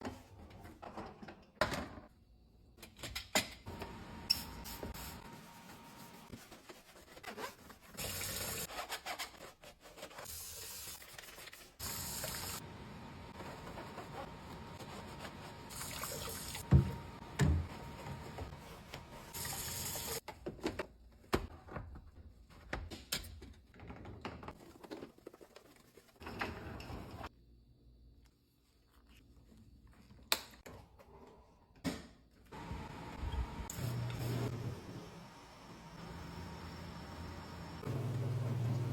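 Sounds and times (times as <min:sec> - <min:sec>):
tap water running: 0:08.0 - 0:08.7, 0:11.8 - 0:12.6, 0:15.7 - 0:17.6, 0:19.3 - 0:20.2.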